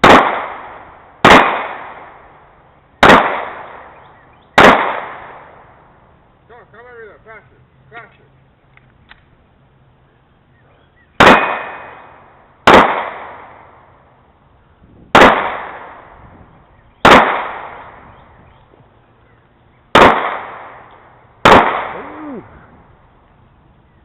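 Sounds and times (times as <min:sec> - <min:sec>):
handgun shots with echo: 0:00.0 - 0:02.1, 0:03.0 - 0:03.9, 0:04.6 - 0:05.5, 0:11.2 - 0:12.1, 0:12.7 - 0:13.6, 0:15.1 - 0:16.1, 0:17.0 - 0:18.0, 0:20.0 - 0:22.1.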